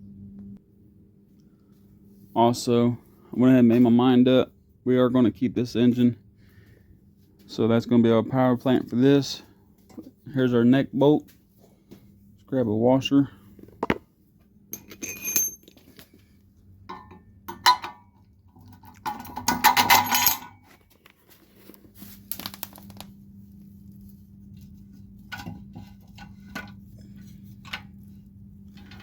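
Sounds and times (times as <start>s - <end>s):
metal washers clinking: 14.7s - 15.9s, 19.0s - 20.6s.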